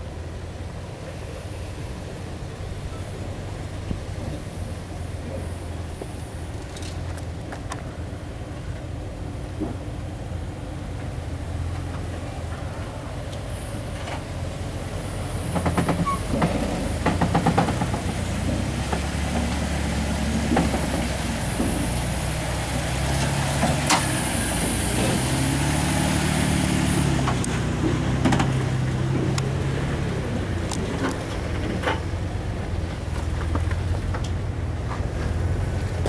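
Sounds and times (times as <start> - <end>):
off-road vehicle engine revving: 15.4 - 32.2
knocks and clunks: 15.5 - 19.7, 20.3 - 22.1, 27.2 - 29.4.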